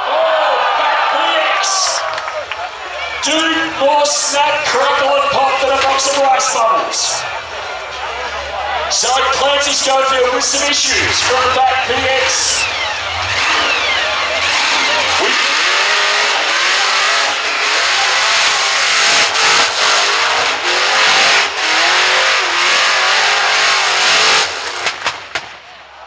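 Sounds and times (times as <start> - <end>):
commentator talking: 1.1 - 7.4, 8.1 - 13.6
car engine revving hard: 1.2 - 25.4
tyre screeching noise: 9.0 - 24.8.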